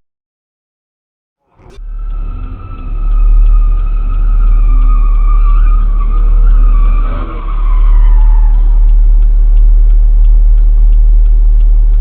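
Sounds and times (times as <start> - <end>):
engine and road rumble: 1.4 - 12.0.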